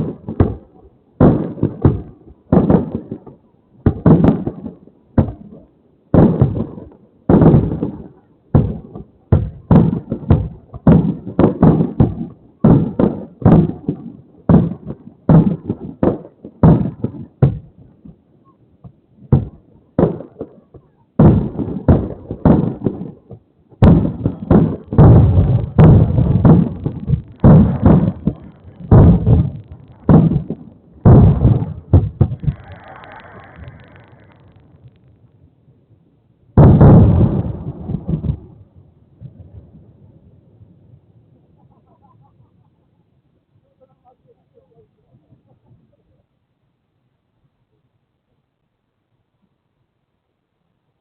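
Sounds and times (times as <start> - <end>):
fireworks bursting with sharp booms: 0.0 - 35.2, 36.6 - 39.9.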